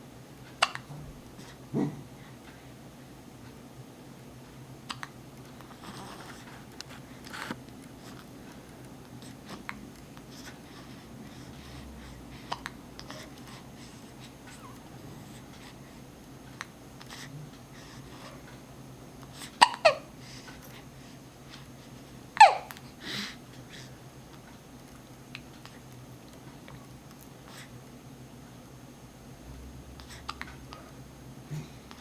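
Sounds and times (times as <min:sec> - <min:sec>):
pet hiccuping: 0:01.7 - 0:02.1, 0:22.4 - 0:22.7.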